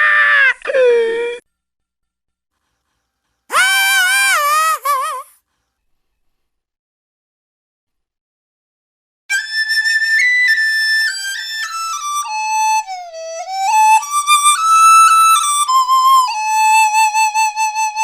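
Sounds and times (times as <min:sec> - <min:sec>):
flute-like solo melody: 0:09.3 - 0:18.0.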